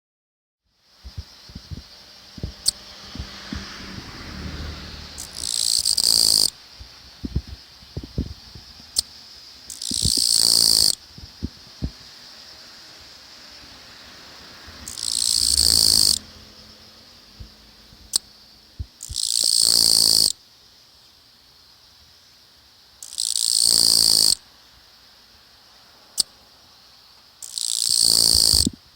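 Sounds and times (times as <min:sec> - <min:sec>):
katydid buzzing: 0:01.0 - 0:20.4, 0:23.0 - 0:24.5, 0:27.4 - 0:28.8.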